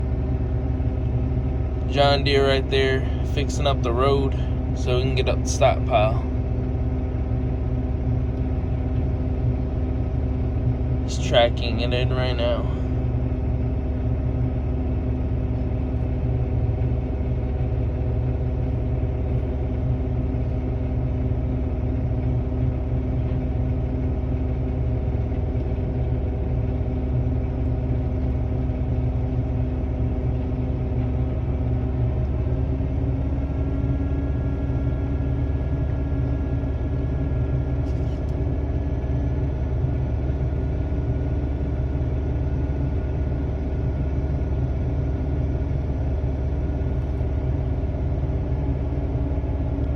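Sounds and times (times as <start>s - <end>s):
heavy engine rumbling: 0.0s - 49.9s.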